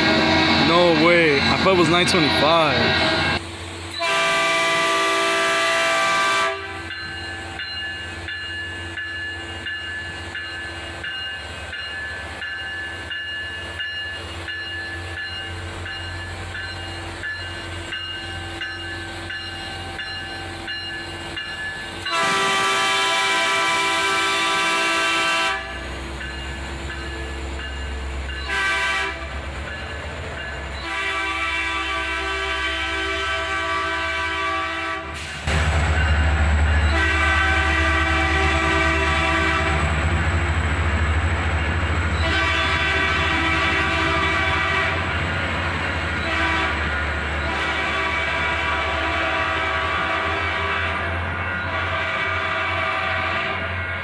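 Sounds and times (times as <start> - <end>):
train air horn blasts: 0.0 - 3.4, 4.0 - 6.9, 22.1 - 25.8, 28.5 - 29.3, 30.8 - 36.0, 36.8 - 40.0, 42.2 - 45.2, 46.2 - 53.9
train rumbling: 0.0 - 54.0.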